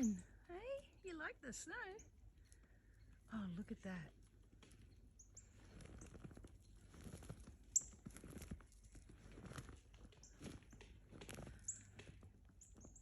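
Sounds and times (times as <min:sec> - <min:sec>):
high bird chirps: 0:00.0 - 0:00.3
footsteps crunching in snow: 0:05.6 - 0:11.7.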